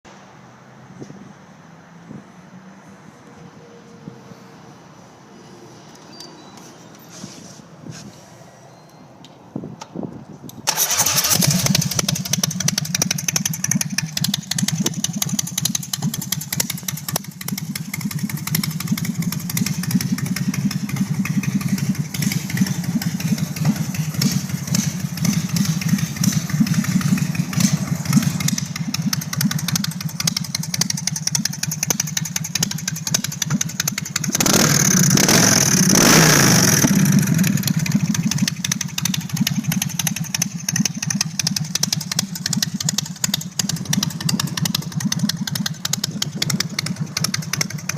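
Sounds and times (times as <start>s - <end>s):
motorcycle engine starting: 10.6s - 47.9s
motorcycle engine idling: 10.7s - 47.9s
motorcycle engine revving: 10.7s - 47.9s.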